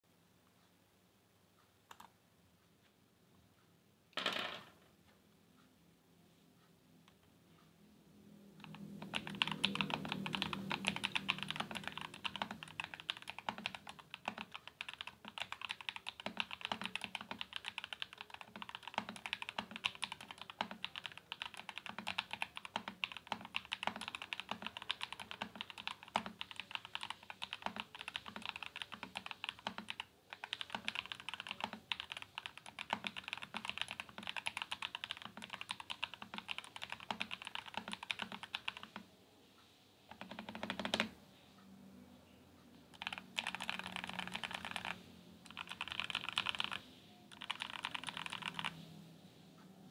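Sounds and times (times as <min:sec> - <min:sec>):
fast typing on mechanical keyboard: 0:08.6 - 0:39.0, 0:40.1 - 0:41.2, 0:42.9 - 0:48.8.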